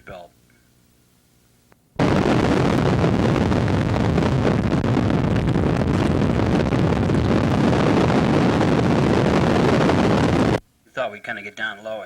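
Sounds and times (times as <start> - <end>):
wind buffeting microphone: 2.0 - 10.6
wind noise: 2.0 - 10.6.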